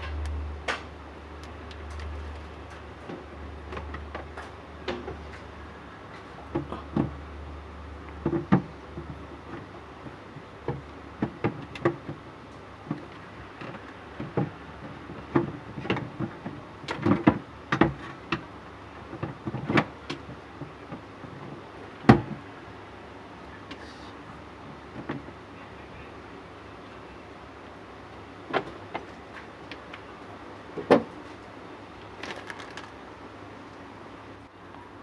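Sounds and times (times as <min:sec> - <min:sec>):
knocks and taps of installation work: 0:01.7 - 0:05.5, 0:08.1 - 0:22.4, 0:24.7 - 0:25.3, 0:30.8 - 0:31.1.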